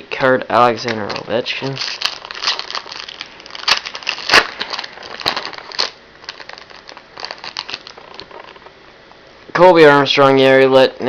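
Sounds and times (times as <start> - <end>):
foil wrapper crinkling: 0.7 - 8.7.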